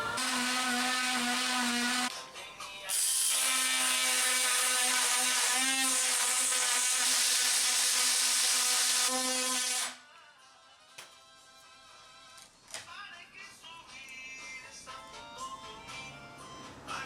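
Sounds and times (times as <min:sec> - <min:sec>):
power tool cutting wood: 0:00.0 - 0:02.1, 0:02.9 - 0:10.0.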